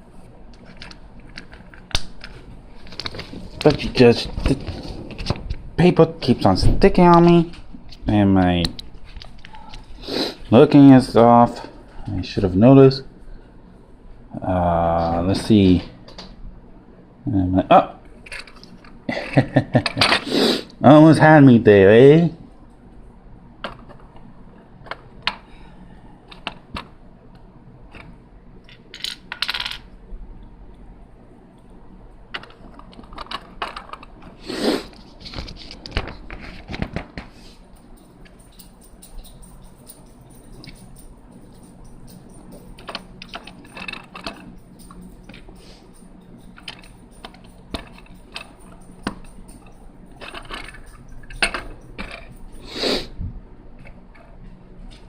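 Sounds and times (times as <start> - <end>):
loose lego pieces rattling: 42.1 - 45.5, 46.5 - 52.6.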